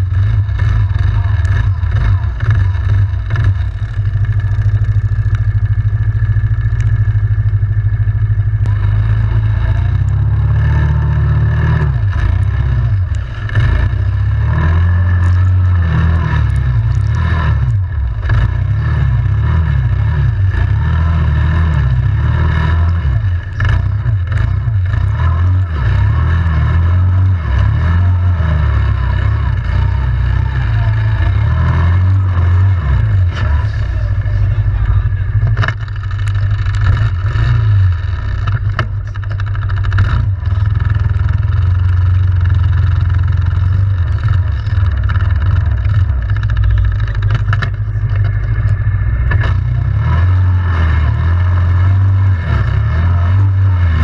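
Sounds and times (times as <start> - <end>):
atv engine revving: 0.0 - 54.0
knocks and rattles: 34.9 - 49.8.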